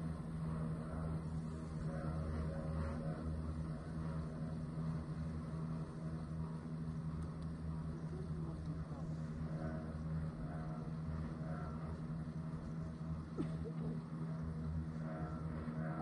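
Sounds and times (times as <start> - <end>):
engine droning: 0.0 - 16.0.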